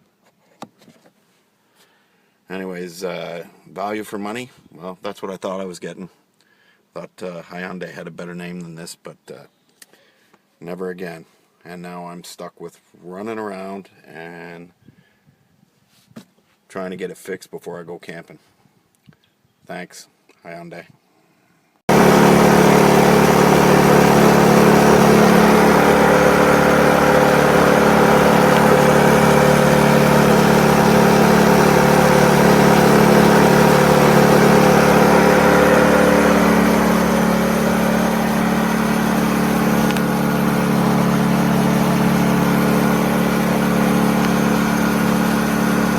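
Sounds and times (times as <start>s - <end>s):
generator engine running: 21.9s - 45.9s.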